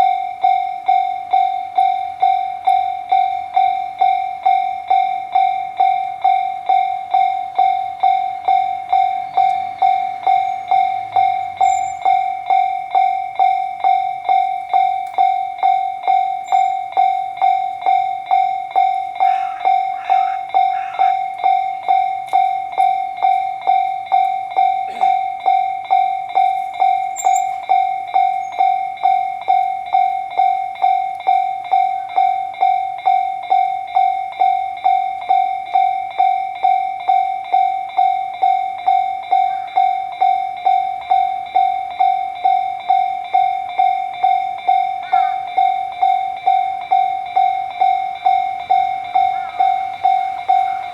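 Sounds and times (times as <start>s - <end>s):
railroad crossing bell ringing: 0.0s - 50.9s.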